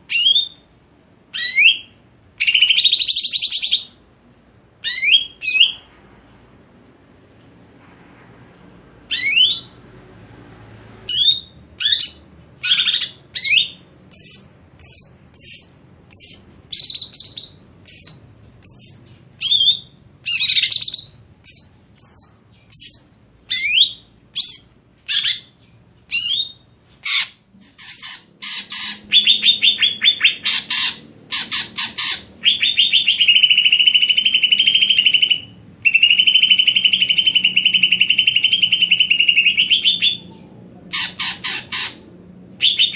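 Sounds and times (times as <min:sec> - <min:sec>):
bird whistling and trilling: 0:00.1 - 0:00.7, 0:01.4 - 0:03.9, 0:04.8 - 0:05.8, 0:09.1 - 0:09.7, 0:11.1 - 0:25.5, 0:26.1 - 0:40.4, 0:42.6 - 0:42.9.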